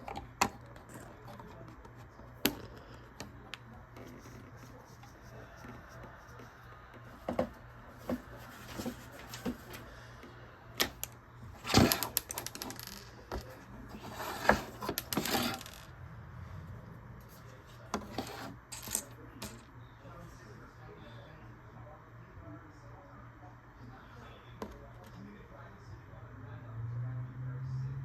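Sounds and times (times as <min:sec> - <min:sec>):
plastic bricks rattling: 0:11.6 - 0:15.9.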